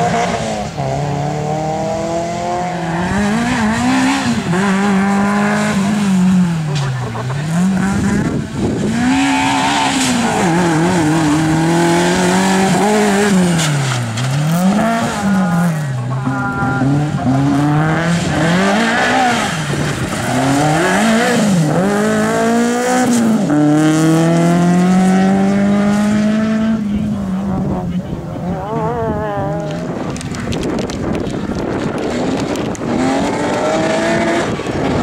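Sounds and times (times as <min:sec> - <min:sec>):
car engine revving hard: 0:00.0 - 0:30.0, 0:31.8 - 0:35.0.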